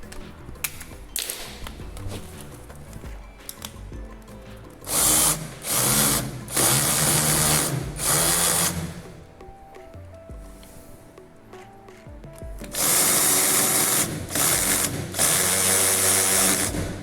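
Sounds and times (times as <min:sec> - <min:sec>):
cordless drill driving screws: 0:04.9 - 0:09.1, 0:12.7 - 0:17.0.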